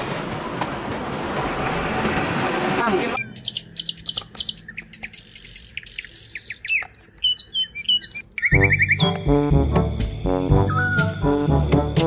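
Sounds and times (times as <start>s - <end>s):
birds chirping and tweeting: 2.1s - 11.3s
music with low brass: 8.5s - 12.0s.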